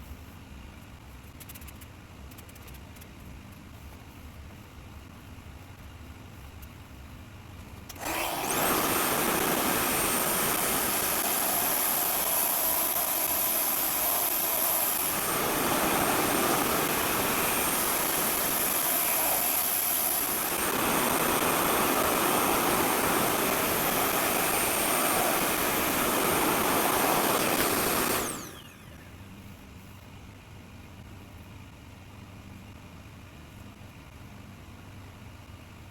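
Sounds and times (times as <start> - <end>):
hair dryer whining rush: 8.0 - 29.0.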